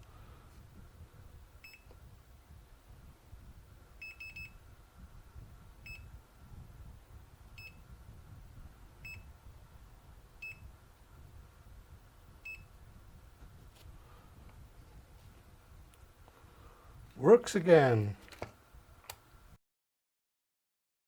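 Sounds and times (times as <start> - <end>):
multimeter beeps: 1.6 - 2.0, 4.0 - 4.6, 5.8 - 6.2, 7.6 - 7.8, 9.0 - 9.3, 10.4 - 10.7, 12.4 - 12.7.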